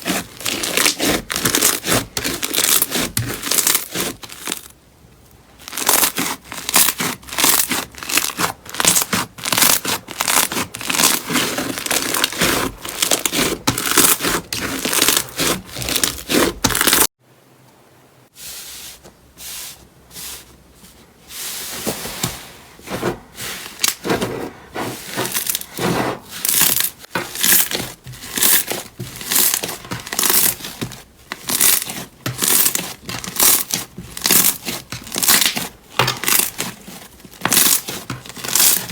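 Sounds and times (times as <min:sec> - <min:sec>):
slime crackling and popping: 0:31.4 - 0:35.6.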